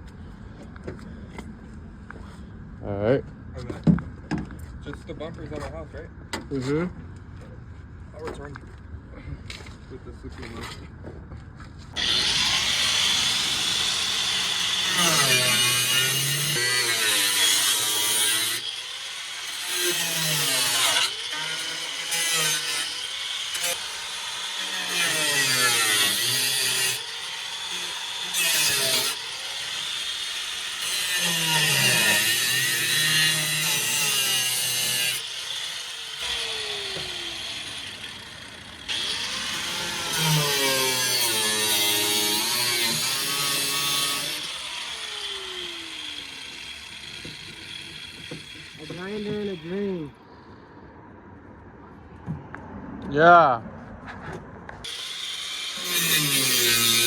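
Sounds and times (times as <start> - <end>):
angle grinder cutting sheet metal: 12.0 - 50.1, 54.8 - 57.0.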